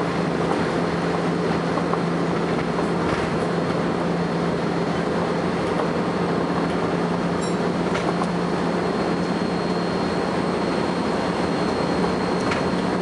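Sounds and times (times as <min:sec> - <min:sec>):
bus engine drone: 0:00.0 - 0:13.0
high-pitched whine: 0:07.3 - 0:13.0.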